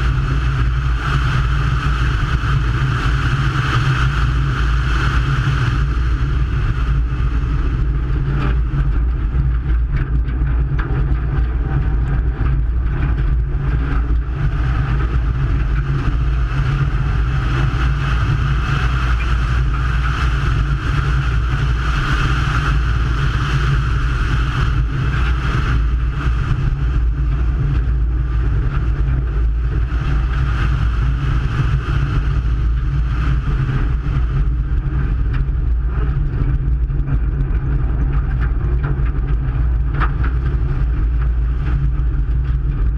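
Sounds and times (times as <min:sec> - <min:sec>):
rally car engine running hard: 0:00.0 - 0:42.9.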